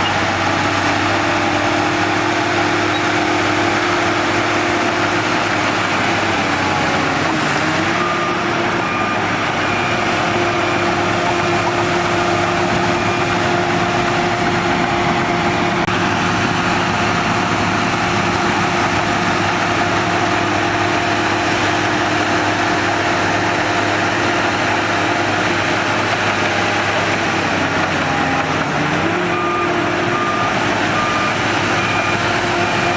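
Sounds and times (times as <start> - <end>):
bulldozer diesel engine running: 0.0 - 32.9
reversing alarm beeping: 2.5 - 15.8, 19.9 - 32.9.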